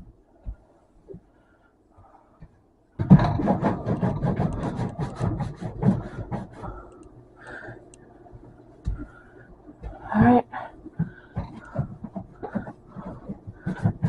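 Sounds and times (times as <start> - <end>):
rag scrubbing a surface: 3.4 - 6.8.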